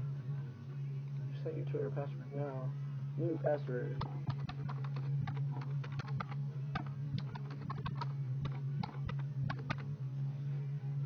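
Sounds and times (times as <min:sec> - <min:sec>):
steady low hum: 0:00.0 - 0:11.0
keyboard keys clicking: 0:04.0 - 0:09.8.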